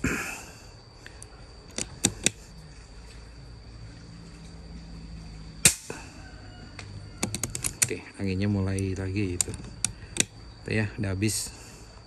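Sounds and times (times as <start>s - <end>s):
sharp clicks: 1.2s - 2.4s, 6.8s - 8.0s, 8.7s - 10.4s.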